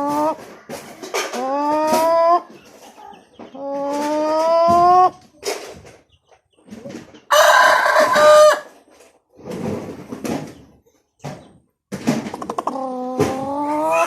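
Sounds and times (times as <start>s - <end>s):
young rooster crowing: 7.3s - 8.7s.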